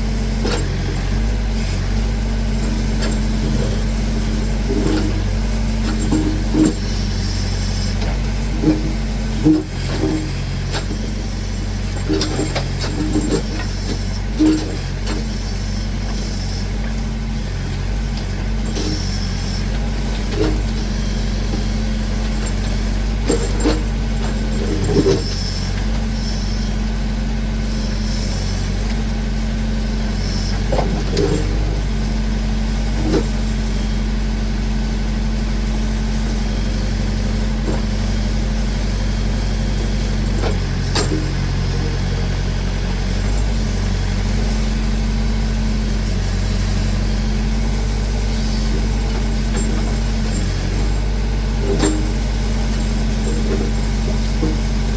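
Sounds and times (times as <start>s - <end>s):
backhoe engine running: 0.0s - 54.9s
clunks from digging bucket: 2.7s - 11.0s, 12.0s - 15.3s, 20.2s - 25.6s, 30.5s - 31.9s, 32.9s - 33.4s, 39.7s - 42.3s, 48.6s - 54.9s.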